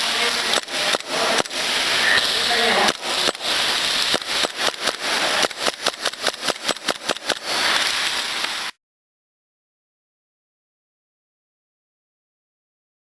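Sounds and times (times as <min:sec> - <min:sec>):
airsoft guns firing: 0:00.0 - 0:08.7
steady hiss: 0:00.0 - 0:08.8.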